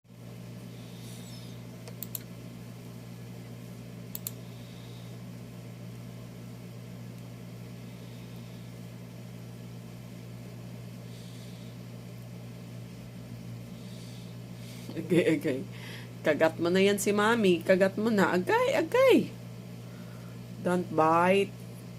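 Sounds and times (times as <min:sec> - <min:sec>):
steady low hum: 0:00.1 - 0:21.9
sharp clicks: 0:01.8 - 0:02.3, 0:04.1 - 0:04.4.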